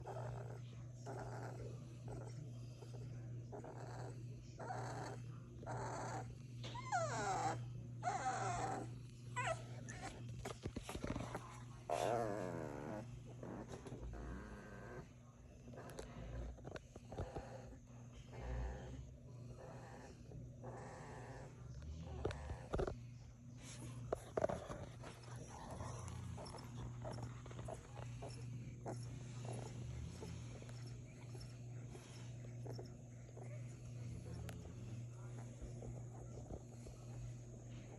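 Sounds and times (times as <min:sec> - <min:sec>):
puppies snoring: 0:00.0 - 0:37.9
steady low hum: 0:00.0 - 0:37.9
puppy whimpering: 0:03.6 - 0:15.0, 0:24.4 - 0:33.6.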